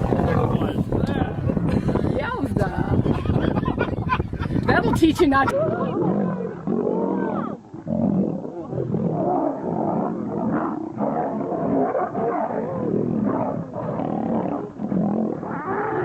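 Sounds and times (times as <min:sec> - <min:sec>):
lions snarling and roaring: 0:05.6 - 0:16.0.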